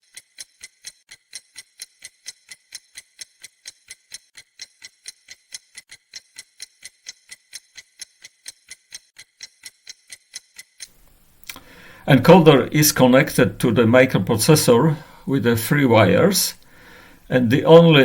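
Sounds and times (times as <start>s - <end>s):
steady ticking clicks: 0.0s - 11.7s.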